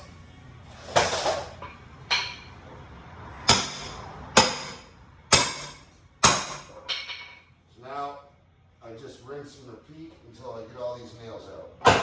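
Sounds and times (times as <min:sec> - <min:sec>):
hammer striking metal: 0:03.4 - 0:07.3.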